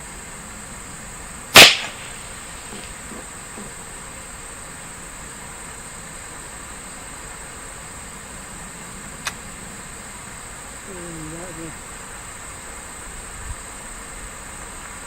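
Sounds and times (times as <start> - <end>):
high insect hiss: 0.0 - 15.0
rifle shot with echo: 1.6 - 3.0.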